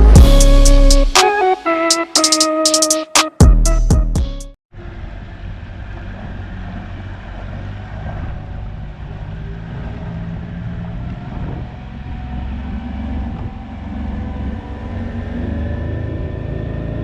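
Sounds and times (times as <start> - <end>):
boat motor rumbling: 4.8 - 17.0
water noise: 5.1 - 15.3
wind noise: 11.0 - 13.8.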